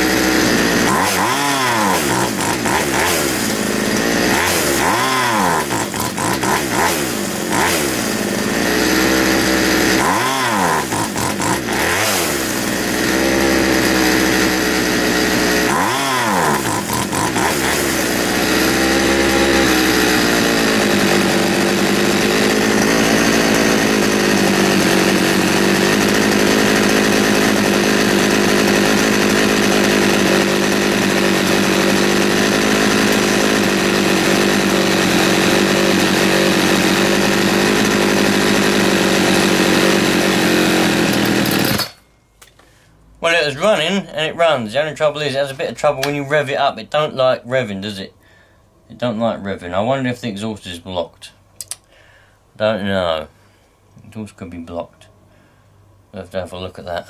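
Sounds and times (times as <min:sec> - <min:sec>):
chainsaw revving and idling: 0:00.0 - 0:42.0.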